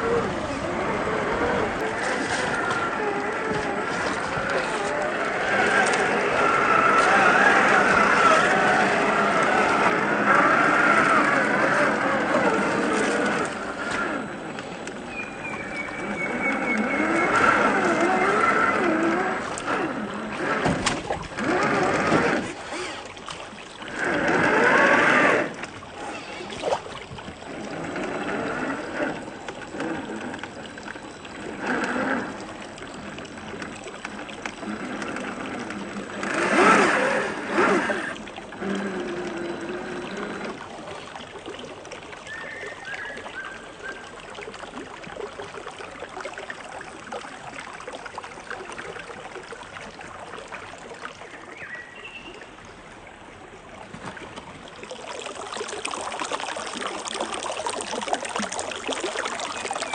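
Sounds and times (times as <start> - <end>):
electric motor and gears whining: 0.0 - 23.1, 23.8 - 26.5, 27.5 - 40.6.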